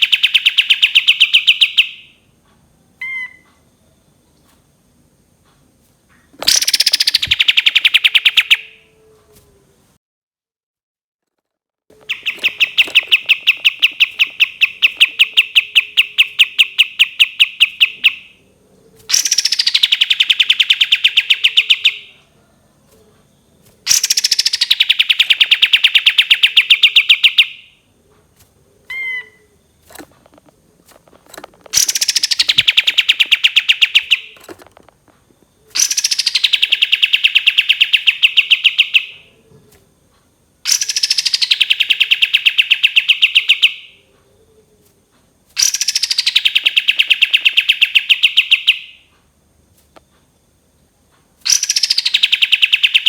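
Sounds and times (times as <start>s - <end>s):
songbird singing rapid trills: 0.0s - 2.2s, 6.4s - 8.8s, 12.0s - 22.2s, 23.2s - 27.8s, 31.7s - 34.5s, 35.3s - 39.3s, 40.6s - 44.0s, 45.6s - 49.0s, 51.5s - 53.0s
short bird chips: 6.2s - 8.7s, 11.9s - 18.4s, 19.0s - 22.0s, 23.6s - 27.5s, 28.2s - 38.9s, 45.6s - 48.8s, 51.4s - 53.0s.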